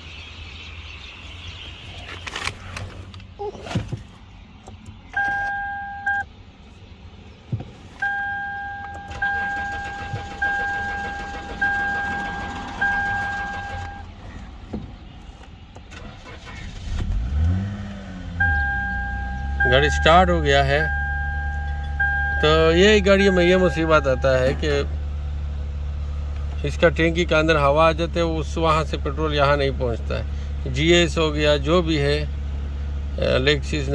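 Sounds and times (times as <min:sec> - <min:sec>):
dashboard warning chime beeps: 0:05.1 - 0:06.3, 0:08.0 - 0:14.1, 0:18.4 - 0:24.9
car engine cranking: 0:08.0 - 0:33.9.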